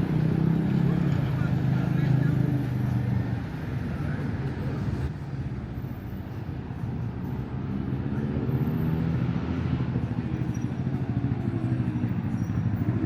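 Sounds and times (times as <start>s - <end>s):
traffic hum: 0.0s - 8.2s.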